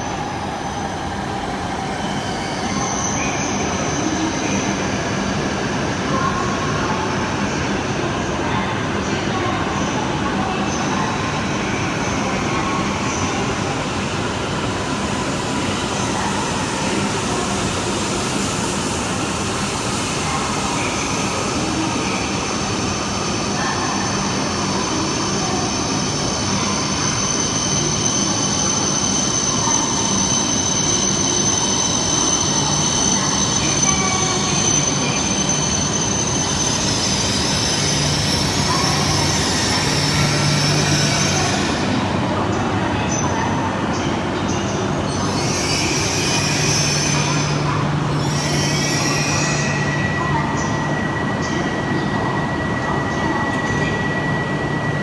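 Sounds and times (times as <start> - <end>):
train running noise: 0.0 - 55.0
high wheel squeal: 25.7 - 42.0, 45.1 - 53.2.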